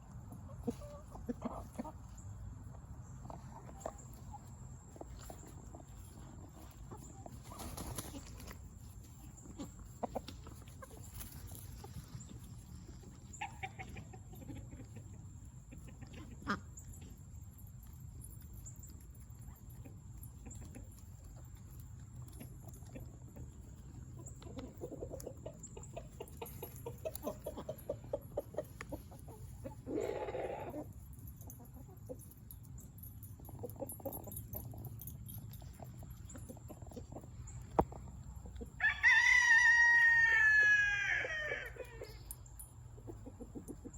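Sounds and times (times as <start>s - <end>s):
chickens clucking: 0.0s - 39.0s, 40.0s - 43.9s
rooster crowing: 38.8s - 41.8s.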